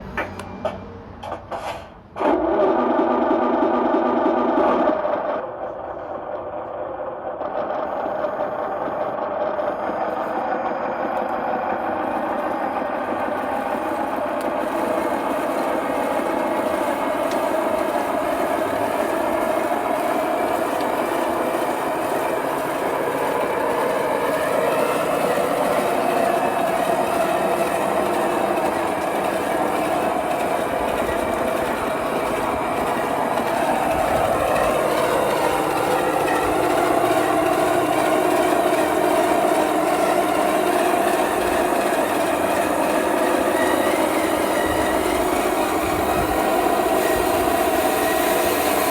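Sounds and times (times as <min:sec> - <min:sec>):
toy bulldozer motor whirring: 0:11.0 - 0:48.9.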